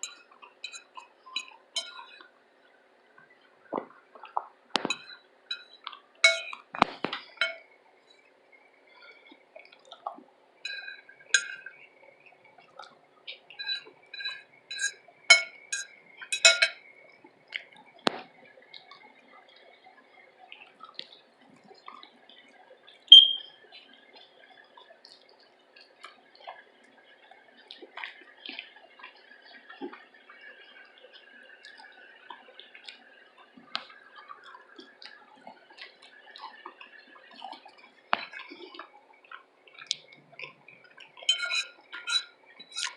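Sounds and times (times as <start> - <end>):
utensils clinking on a plate: 0.0 - 2.2, 4.8 - 7.6, 10.7 - 11.7, 13.6 - 16.8, 41.2 - 42.9
wet chewing clicks: 24.2 - 42.9.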